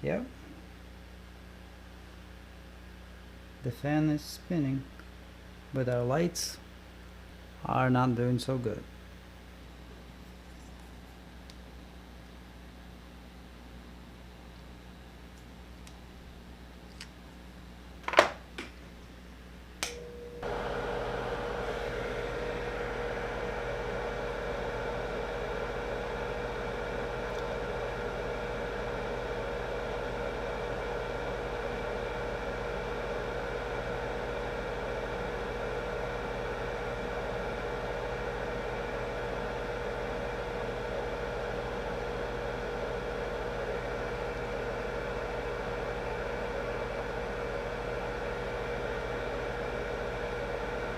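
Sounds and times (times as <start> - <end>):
small fan whirring: 18.0 - 50.9.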